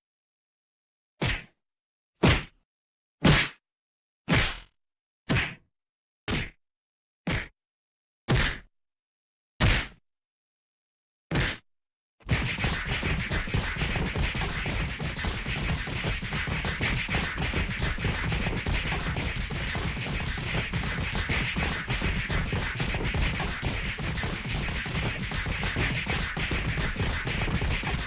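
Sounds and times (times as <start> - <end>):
rapid gunfire: 12.3 - 28.0.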